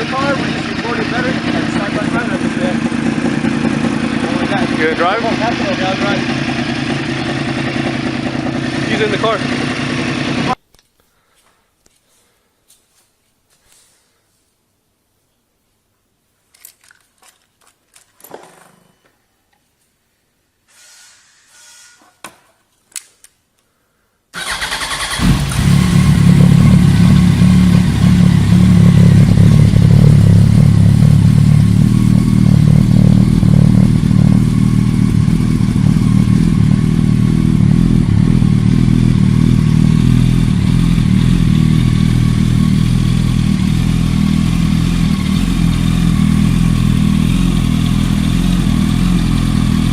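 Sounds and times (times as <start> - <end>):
motorcycle engine running: 0.0 - 10.6, 24.5 - 49.9.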